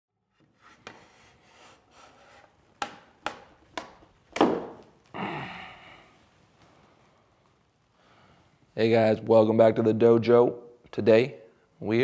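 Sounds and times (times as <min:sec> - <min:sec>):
soft scraping on wood: 0:00.4 - 0:02.6
sharp knocks on wood: 0:02.8 - 0:04.8.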